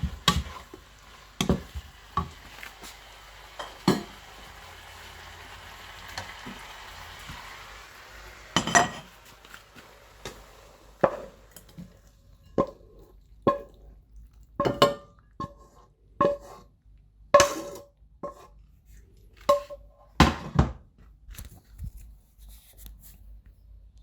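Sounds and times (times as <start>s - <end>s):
metal utensil clanking on pan: 0.0s - 0.8s, 1.4s - 2.5s, 3.6s - 4.4s, 8.5s - 9.2s.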